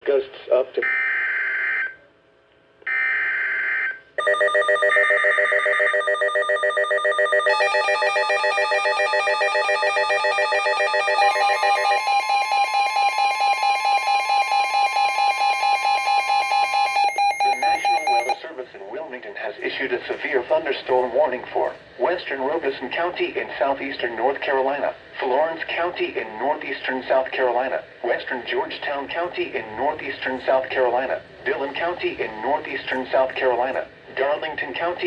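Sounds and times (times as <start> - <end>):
pulsing multi-tone alarm: 0.8 - 2.0, 2.9 - 18.4
steady warning alarm tone: 0.8 - 2.0, 2.9 - 18.4.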